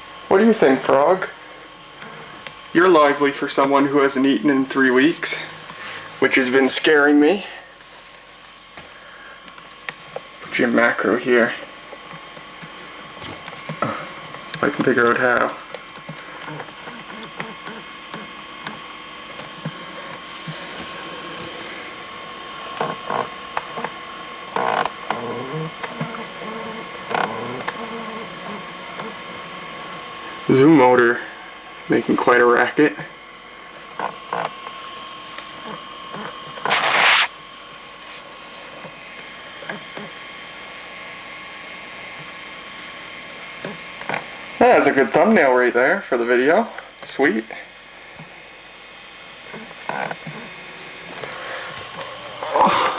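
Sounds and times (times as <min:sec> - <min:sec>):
camcorder zoom motor whirring: 0:15.7 - 0:30.5, 0:35.6 - 0:37.4.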